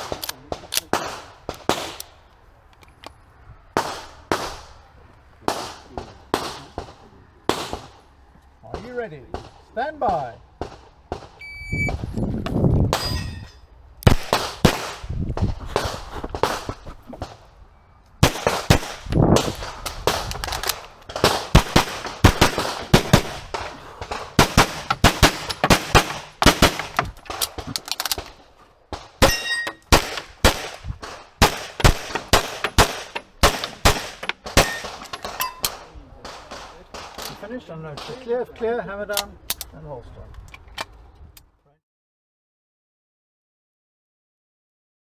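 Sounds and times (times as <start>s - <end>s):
shot timer beep: 11.4s - 12.0s
steel targets clanging: 12.9s - 14.3s, 29.2s - 38.1s
handgun shots: 14.0s - 15.0s, 18.2s - 28.4s, 29.2s - 37.4s.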